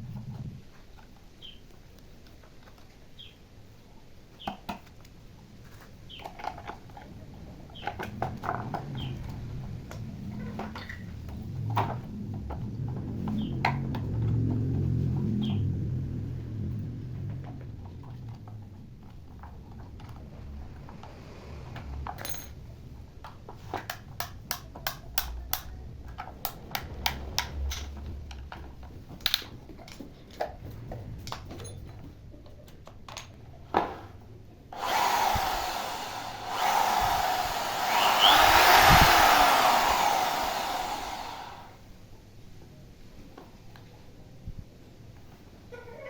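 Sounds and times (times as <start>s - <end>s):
electric hand drill running: 34.7s - 41.8s.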